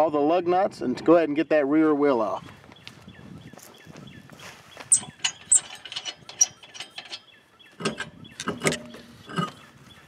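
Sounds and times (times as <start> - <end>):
lug wrench metallic clicks: 4.9 - 9.6.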